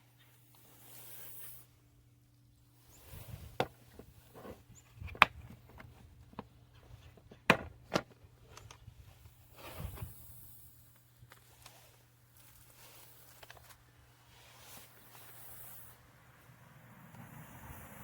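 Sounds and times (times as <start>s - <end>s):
objects knocking and clicking: 3.6s - 8.8s.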